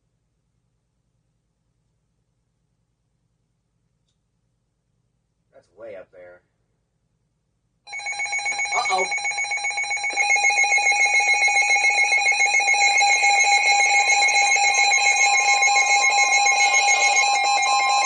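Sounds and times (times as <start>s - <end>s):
electronic alarm tone pulsing: 7.9s - 18.0s.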